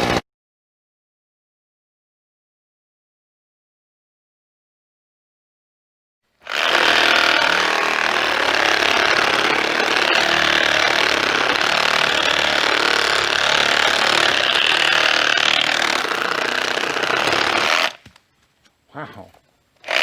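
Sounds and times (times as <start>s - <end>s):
power saw cutting wood: 0.0s - 0.2s, 6.4s - 18.1s.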